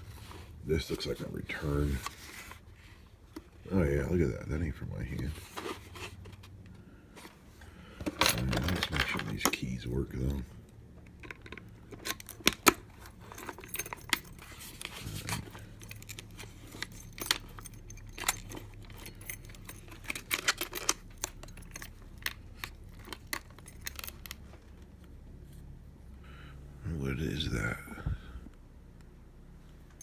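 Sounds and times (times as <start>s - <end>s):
keys jangling: 8.1s - 9.3s, 11.2s - 24.5s
metal clicks in lock cylinder: 10.7s - 24.4s.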